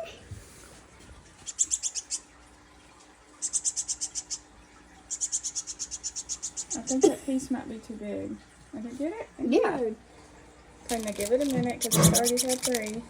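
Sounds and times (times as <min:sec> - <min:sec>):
baby bird high-pitched chirps: 0:01.4 - 0:02.4, 0:03.4 - 0:04.5, 0:05.1 - 0:07.1, 0:11.0 - 0:13.0.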